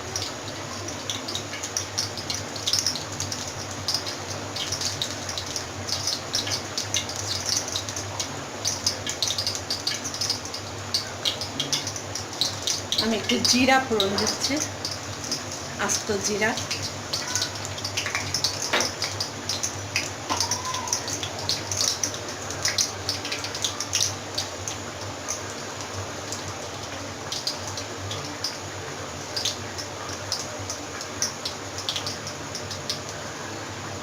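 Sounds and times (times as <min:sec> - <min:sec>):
seeds sizzling in hot oil: 0:00.0 - 0:34.0.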